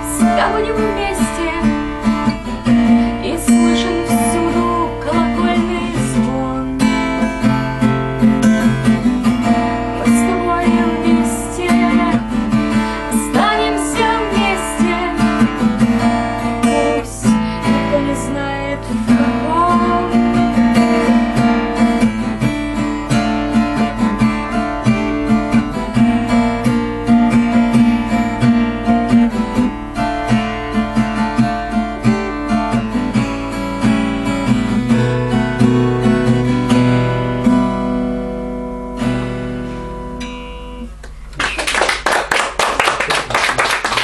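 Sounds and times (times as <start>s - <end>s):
acoustic guitar playing: 0.0s - 42.0s
audience applause: 41.3s - 44.0s.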